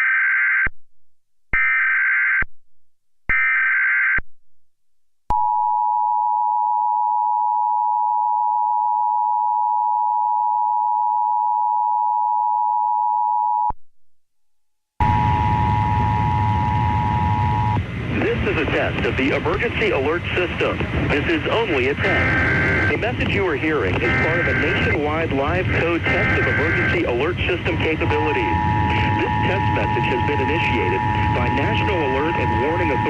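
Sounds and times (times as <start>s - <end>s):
loud noisy crackle: 15.0s - 33.0s
harsh electronic data bursts: 21.2s - 33.0s
two-tone attention signal: 24.0s - 25.0s, 26.0s - 27.2s, 27.9s - 33.0s.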